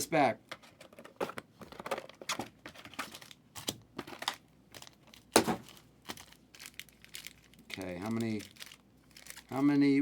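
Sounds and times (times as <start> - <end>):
foil wrappers crinkling: 2.9 - 10.0.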